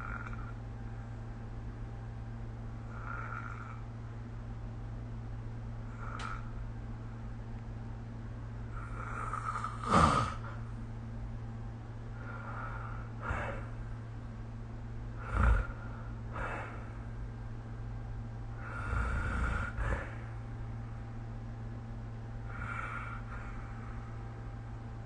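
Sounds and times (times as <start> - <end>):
person snoring: 0.0 - 0.6, 2.9 - 3.9, 5.9 - 6.5, 8.7 - 10.6, 15.2 - 17.0, 18.6 - 20.3, 22.5 - 23.7
steady low hum: 0.0 - 25.0.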